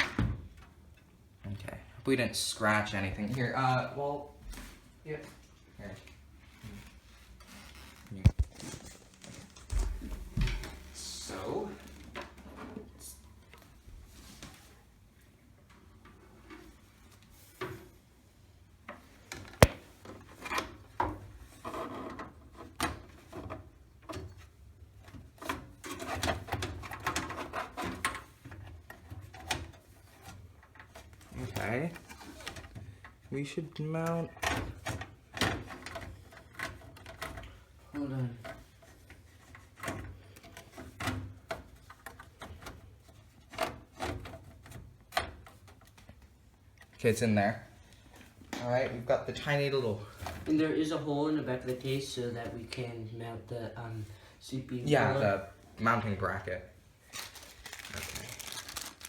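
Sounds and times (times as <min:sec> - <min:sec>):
sharp loud click: 0:19.6 - 0:19.8.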